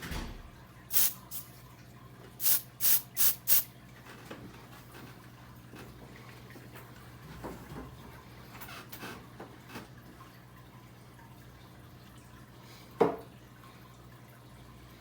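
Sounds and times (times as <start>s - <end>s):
aerosol spray hissing: 0.9s - 1.5s, 2.4s - 3.6s.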